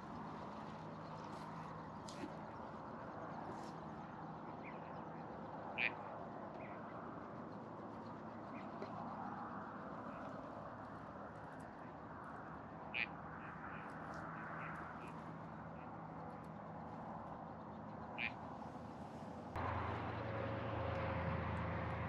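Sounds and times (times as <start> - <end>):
steady background rumble: 0.0 - 22.0
ducks quacking: 5.8 - 6.1, 18.2 - 18.4.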